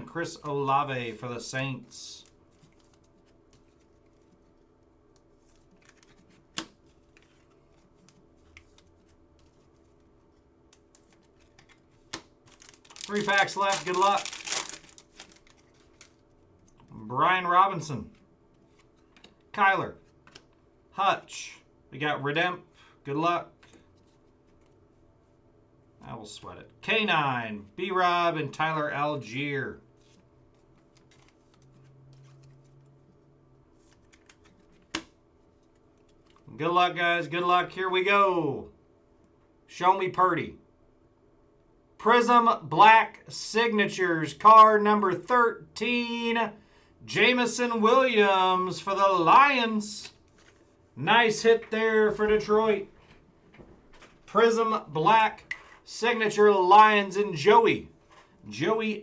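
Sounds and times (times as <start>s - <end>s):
card pack clicks and rustles: 5.2s - 10.0s, 10.7s - 16.3s.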